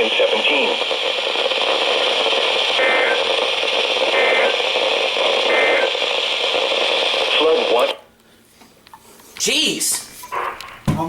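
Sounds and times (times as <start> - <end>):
radio static: 0.0 - 8.1, 10.3 - 10.8.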